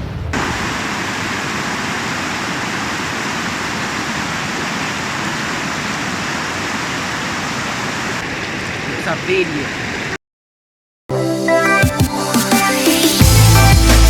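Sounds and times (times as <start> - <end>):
flowing water rushing: 0.4 - 10.2.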